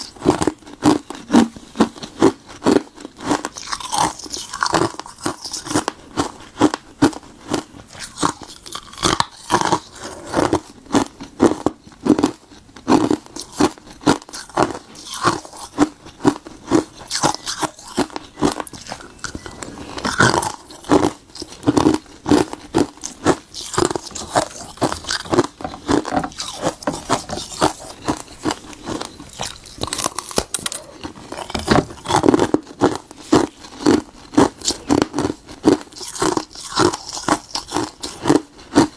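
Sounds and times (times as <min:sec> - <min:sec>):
frozen tea blocks crunching: 0:14.3 - 0:38.9.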